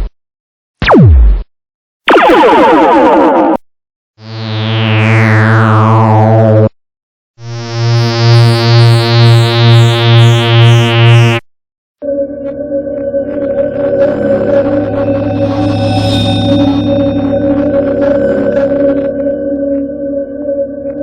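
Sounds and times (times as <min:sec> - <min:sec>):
crackling electronic drone: 0:12.0 - 0:21.0
throbbing pulsing hum: 0:12.0 - 0:21.0
buzzing hum with falling sweep: 0:12.2 - 0:21.0.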